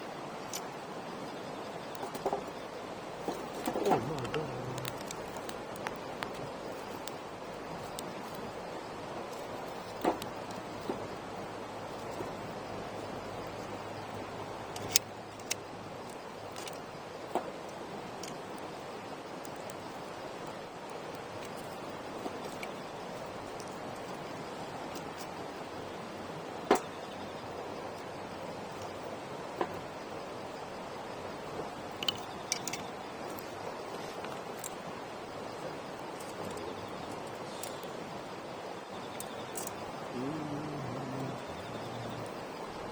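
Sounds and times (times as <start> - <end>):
campfire burning with low hiss: 0.0 - 42.9
burning wood crackling and popping: 1.9 - 25.6, 31.4 - 38.1.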